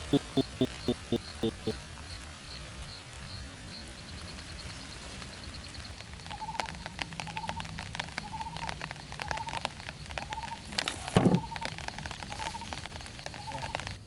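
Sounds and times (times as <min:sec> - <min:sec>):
animal trilled calls: 0:00.0 - 0:01.8
crackling ticks: 0:00.0 - 0:01.8, 0:05.2 - 0:10.9, 0:11.5 - 0:14.0.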